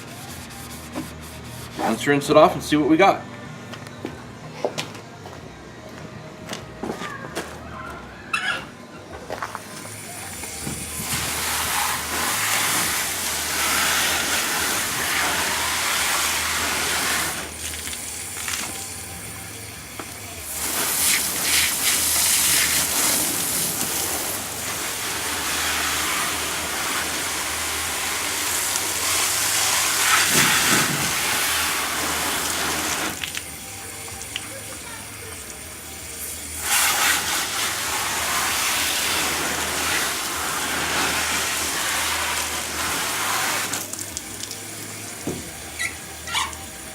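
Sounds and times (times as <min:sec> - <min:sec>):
water spraying on plastic: 0:09.6 - 0:46.9.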